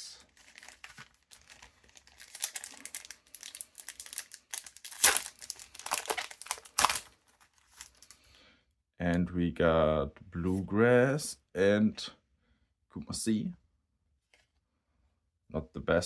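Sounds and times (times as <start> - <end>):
foil pack tearing and crinkling: 0.4 - 8.2.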